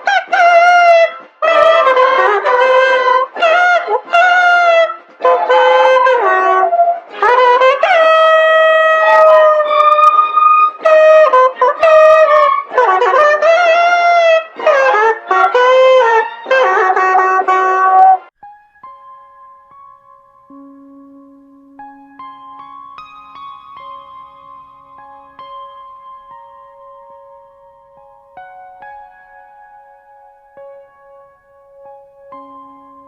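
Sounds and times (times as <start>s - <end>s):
horn-like wind instrument melody: 0.0s - 18.3s.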